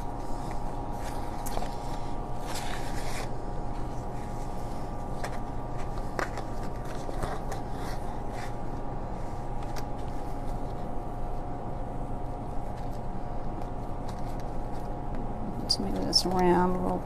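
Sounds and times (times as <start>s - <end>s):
fabric rustling: 0.0s - 11.4s
steady background hum: 0.0s - 17.0s.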